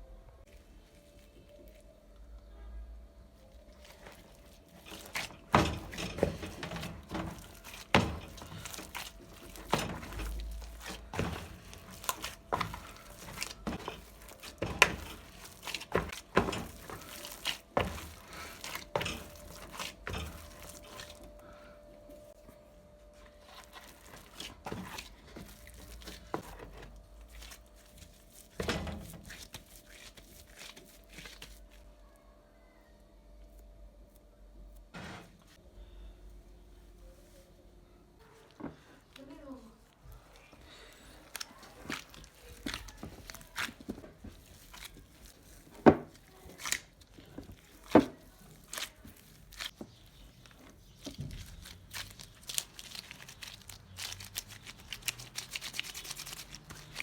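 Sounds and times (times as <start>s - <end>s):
faint steady hum: 20.8s - 23.9s.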